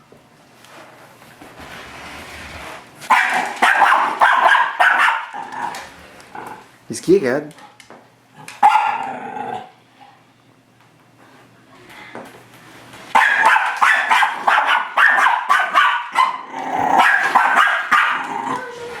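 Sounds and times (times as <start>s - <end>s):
dog barking rapidly: 3.1s - 5.5s, 8.6s - 9.0s, 13.1s - 18.6s.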